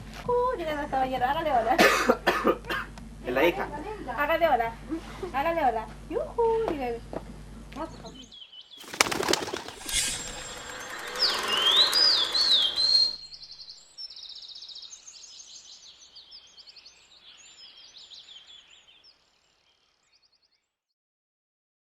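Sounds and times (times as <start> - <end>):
small birds chirping: 7.8 - 20.8.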